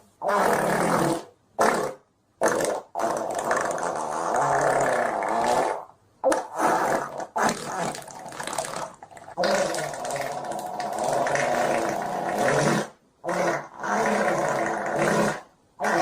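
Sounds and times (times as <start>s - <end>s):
stomach growling and gurgling: 2.4s - 16.0s.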